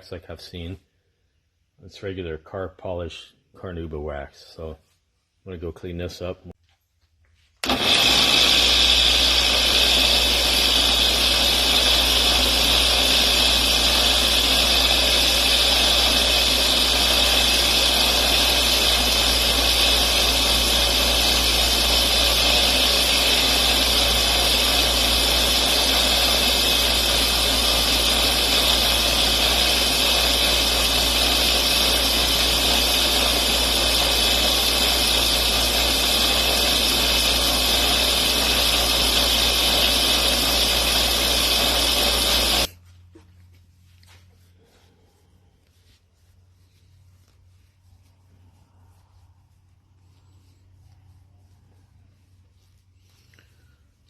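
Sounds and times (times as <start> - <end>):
bench buffer whirring: 7.6 - 42.7.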